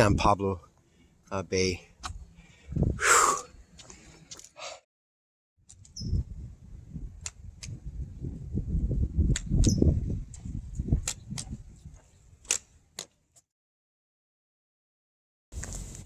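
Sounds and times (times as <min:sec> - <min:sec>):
gusty wind buffeting microphone: 0:02.2 - 0:03.1, 0:05.8 - 0:12.4.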